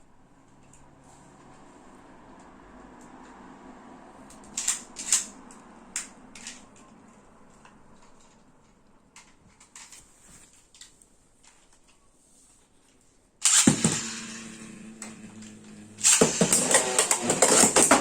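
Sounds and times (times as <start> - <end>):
small objects clicking and knocking: 15.4 - 18.0.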